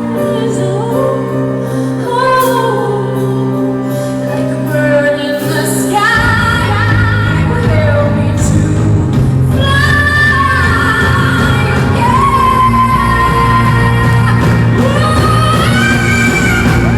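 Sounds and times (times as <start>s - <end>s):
woman singing: 0.0s - 16.9s
bass and drums: 6.0s - 16.9s.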